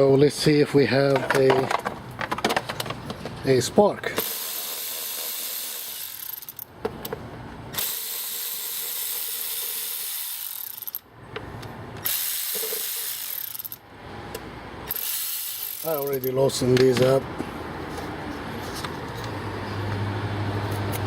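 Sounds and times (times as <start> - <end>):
ratchet wrench clicking: 4.2 - 6.7, 7.8 - 11.1, 12.0 - 13.8, 14.9 - 16.4.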